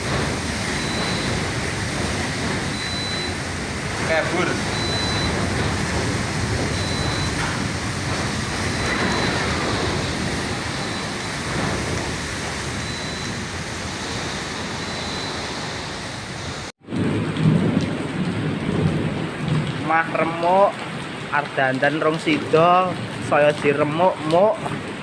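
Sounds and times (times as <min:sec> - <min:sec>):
heavy rain rushing hiss: 0:00.0 - 0:17.6
low rumble: 0:00.0 - 0:17.8.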